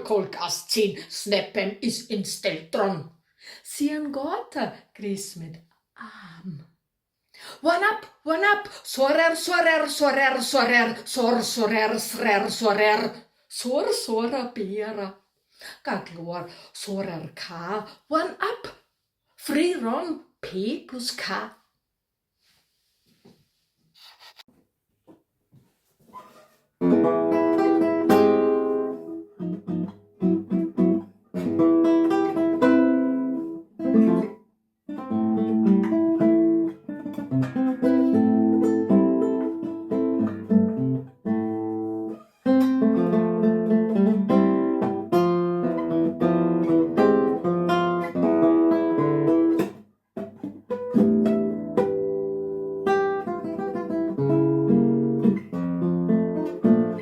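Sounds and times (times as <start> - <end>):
solo acoustic guitar: 26.1 - 57.0.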